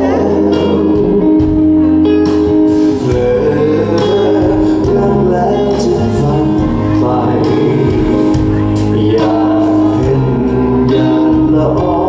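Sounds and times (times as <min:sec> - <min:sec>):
live band music: 0:00.0 - 0:12.0
low bass notes: 0:00.0 - 0:12.0.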